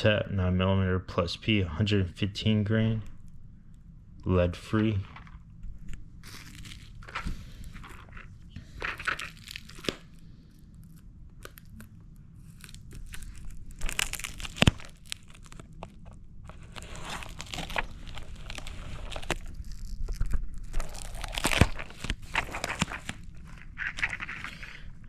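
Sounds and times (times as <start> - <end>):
packaging tearing and crumpling: 5.1 - 25.0.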